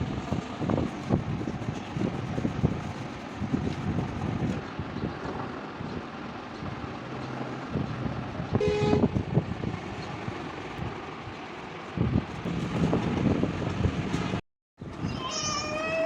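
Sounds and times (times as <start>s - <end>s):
vehicle horn toot: 8.6s - 9.2s.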